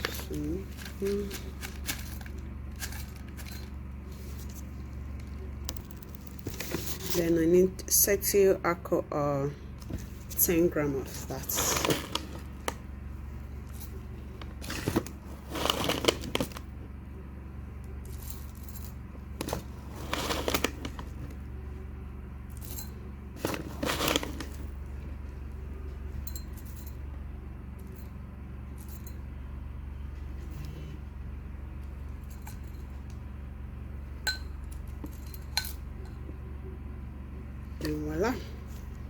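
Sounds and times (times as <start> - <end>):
steady low hum: 0.0 - 39.0
clinks and rattles of powder flakes: 10.3 - 12.8, 13.5 - 16.7, 17.9 - 21.4, 22.5 - 24.8, 26.1 - 29.4, 34.2 - 36.3.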